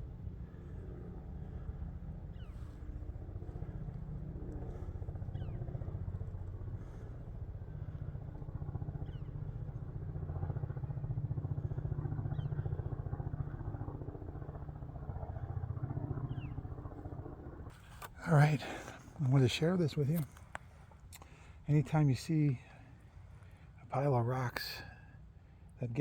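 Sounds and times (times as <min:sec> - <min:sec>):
bird chirping: 0:02.2 - 0:02.8, 0:16.2 - 0:16.6.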